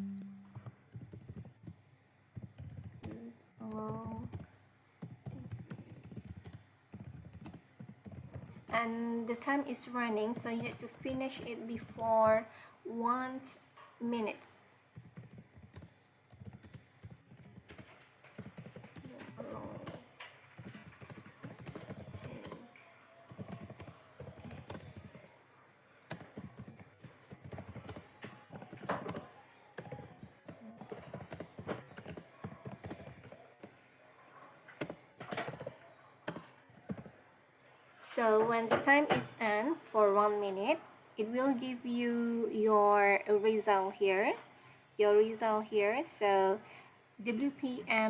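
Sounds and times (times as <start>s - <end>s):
keyboard typing clicks: 2.4s - 8.8s, 15.0s - 22.7s, 23.3s - 25.3s, 26.1s - 33.7s, 34.8s - 37.1s.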